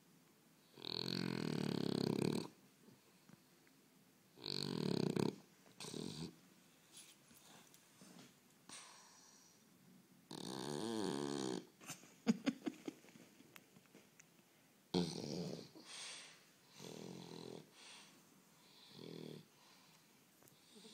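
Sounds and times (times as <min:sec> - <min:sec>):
dog snoring: 0:00.6 - 0:02.6, 0:04.3 - 0:06.4, 0:10.3 - 0:11.7, 0:14.9 - 0:15.9, 0:16.7 - 0:17.8, 0:18.6 - 0:19.6.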